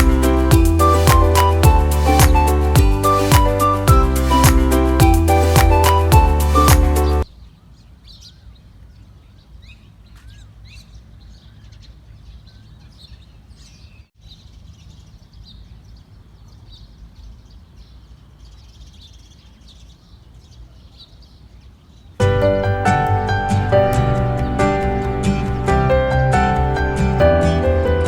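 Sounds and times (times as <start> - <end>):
small birds chirping: 0.0 - 28.0
low background rumble: 22.2 - 28.0.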